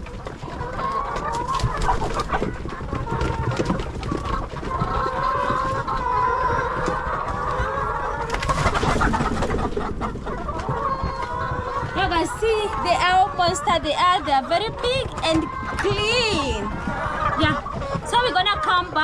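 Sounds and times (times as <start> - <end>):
hens clucking and calling: 0.0 - 19.0.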